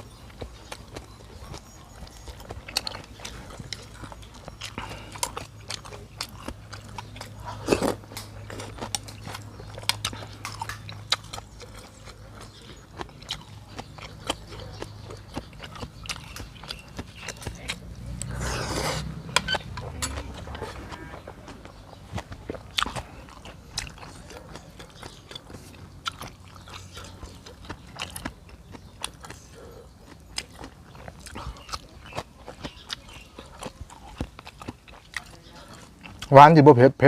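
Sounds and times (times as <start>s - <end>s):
person chewing and biting: 0.0s - 36.3s.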